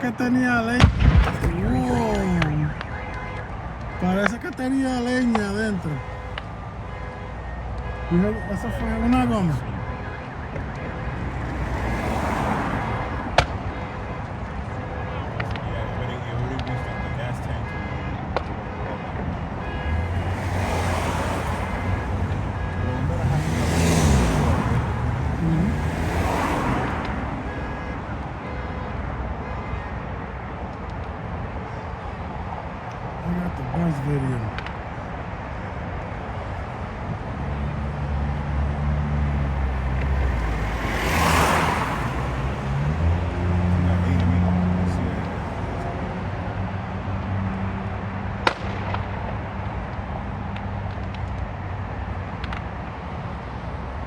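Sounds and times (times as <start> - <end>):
road traffic noise: 0.0 - 54.0
sharp bang: 0.8 - 3.2
vehicle passing: 11.2 - 13.6, 19.8 - 27.4, 37.0 - 51.3.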